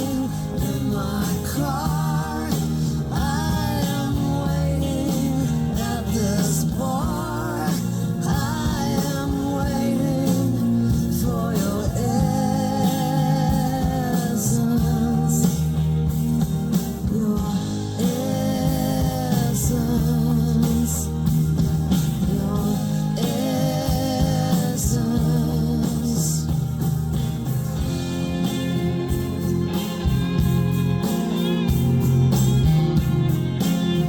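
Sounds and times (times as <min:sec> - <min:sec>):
person singing: 0:00.0 - 0:16.0, 0:16.9 - 0:21.3, 0:22.2 - 0:26.6
bass: 0:00.0 - 0:34.0
guitar: 0:00.0 - 0:34.0.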